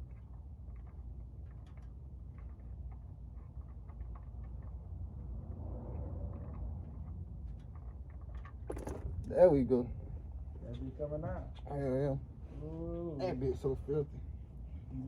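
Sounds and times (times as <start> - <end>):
low steady rumble: 0.0 - 15.0.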